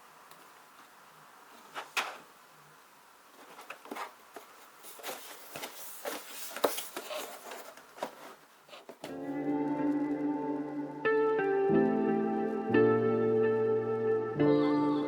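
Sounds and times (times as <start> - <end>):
paper and cardboard rustling: 3.3 - 9.1
guitar music: 9.1 - 15.0.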